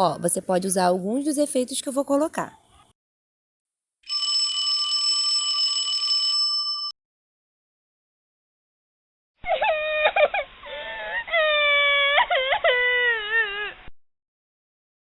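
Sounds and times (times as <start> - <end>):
telephone ringing: 4.1 - 7.0
small child crying: 9.4 - 13.9.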